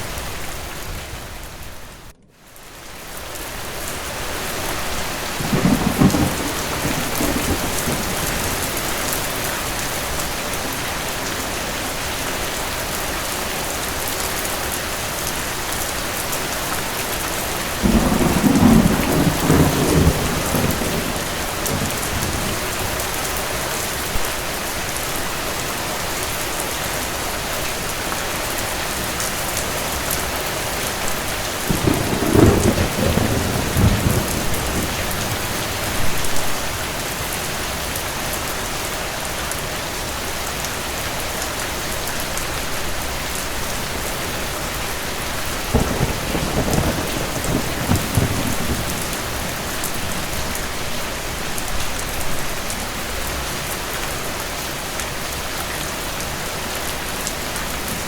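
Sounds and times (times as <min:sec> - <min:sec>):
steady rain: 0:00.0 - 0:58.0
thunder rumbling: 0:04.6 - 0:11.1, 0:17.6 - 0:23.9, 0:31.0 - 0:37.0, 0:44.7 - 0:51.3.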